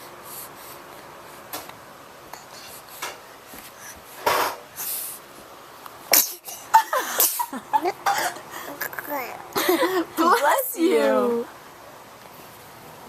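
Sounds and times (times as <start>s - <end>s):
baby sneezing: 6.1s - 7.5s.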